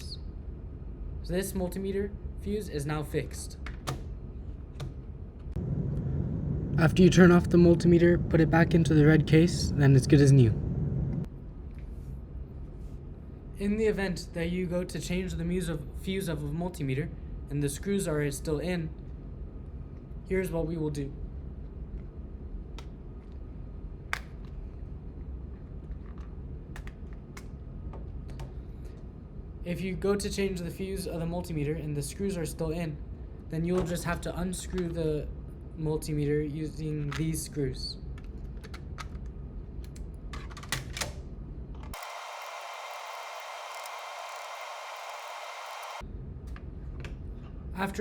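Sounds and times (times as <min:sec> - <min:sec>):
low steady hum: 0:04.1 - 0:36.6.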